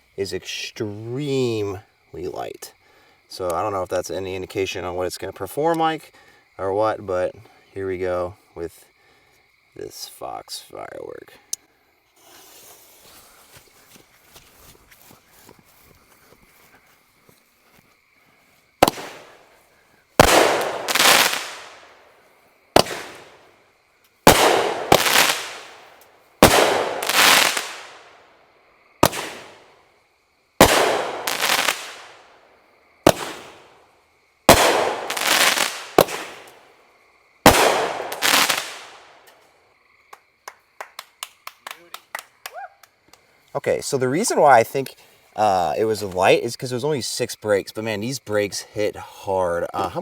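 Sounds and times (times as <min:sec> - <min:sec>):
firework aerial break booms: 0:18.8 - 0:19.5, 0:20.2 - 0:22.0, 0:22.8 - 0:23.5, 0:24.2 - 0:28.2, 0:29.0 - 0:29.7, 0:30.6 - 0:32.3, 0:33.0 - 0:33.8, 0:34.5 - 0:36.6, 0:37.4 - 0:39.1.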